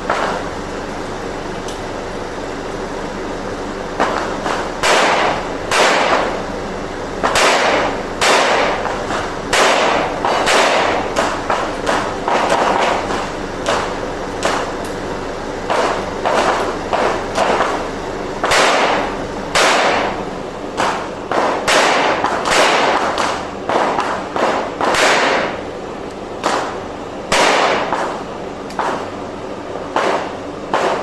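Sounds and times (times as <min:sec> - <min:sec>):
revolver gunshots: 0:04.0 - 0:06.4, 0:07.2 - 0:13.9, 0:18.4 - 0:20.2, 0:20.8 - 0:25.6, 0:26.4 - 0:28.2, 0:29.9 - 0:31.0.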